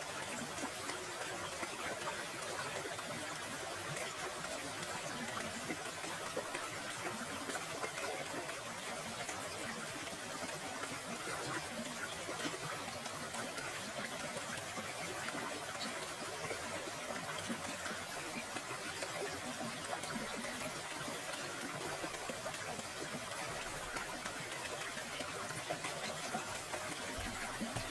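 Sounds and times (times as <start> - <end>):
small water splashes: 0.0 - 27.9.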